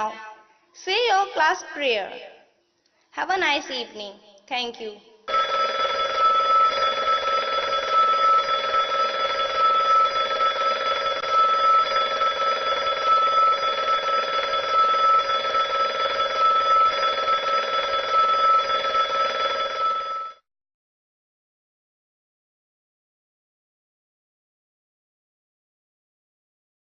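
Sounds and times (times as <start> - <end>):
electric school bell ringing: 5.3 - 20.4.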